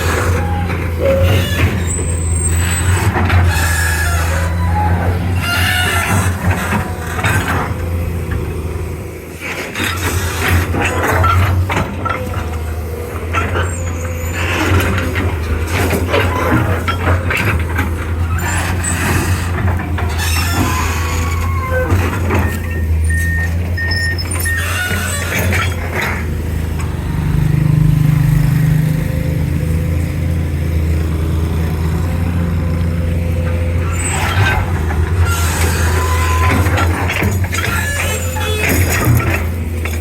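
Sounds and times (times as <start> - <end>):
excavator diesel engine running: 0.0 - 40.0
machine clanks and knocks: 33.6 - 40.0.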